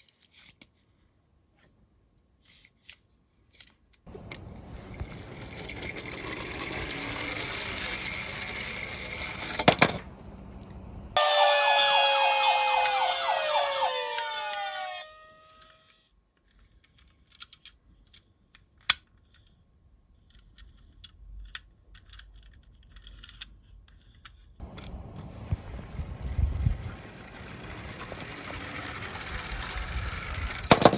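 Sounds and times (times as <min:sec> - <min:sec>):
toy siren stepped tones: 0:10.7 - 0:16.0, 0:24.7 - 0:30.7
short noisy burst: 0:24.6 - 0:30.9.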